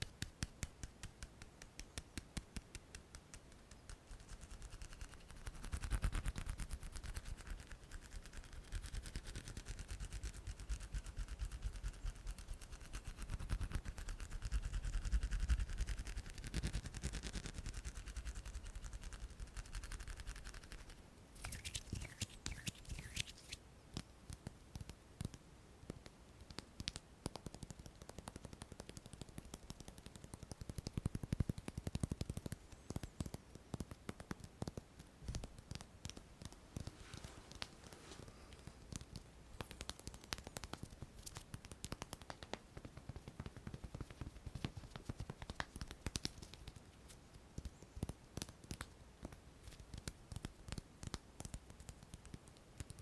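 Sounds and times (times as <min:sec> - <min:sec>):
soft hand rubbing: 0:16.2 - 0:23.6, 0:36.1 - 0:41.5
fingertip taps and clicks: 0:21.4 - 0:36.9, 0:38.6 - 0:46.8.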